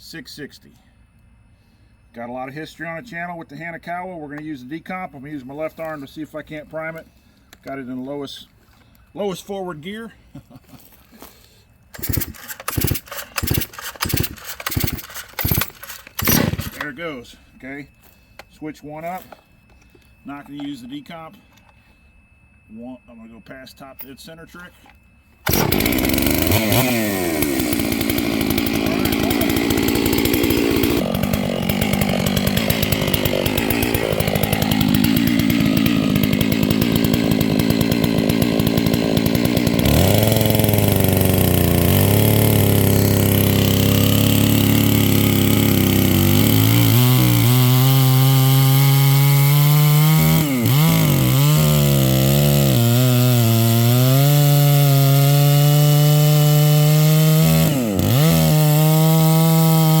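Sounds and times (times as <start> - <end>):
chainsaw cutting wood: 11.2 - 16.9, 25.4 - 60.0.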